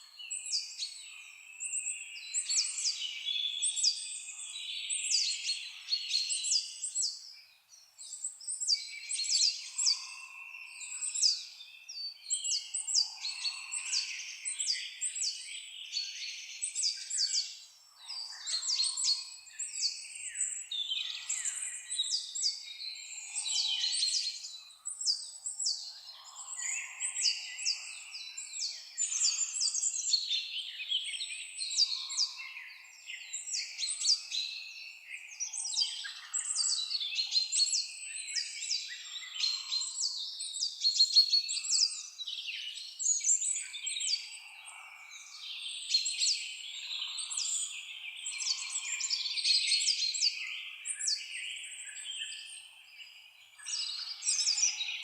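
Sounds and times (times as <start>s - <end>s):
songbirds singing and chirping: 0.0s - 55.0s.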